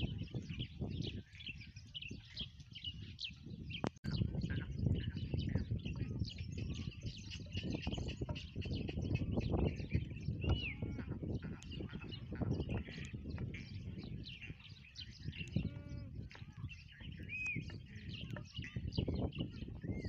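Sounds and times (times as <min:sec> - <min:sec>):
many small birds chirping: 0:00.0 - 0:20.0.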